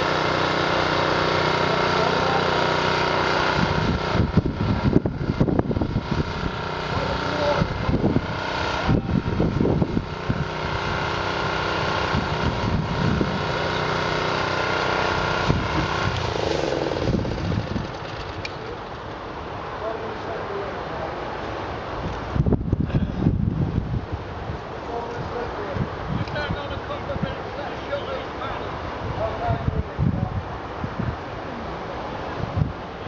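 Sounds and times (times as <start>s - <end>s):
motor running steadily: 0.0s - 33.0s
low rumbling bumps: 14.8s - 19.6s.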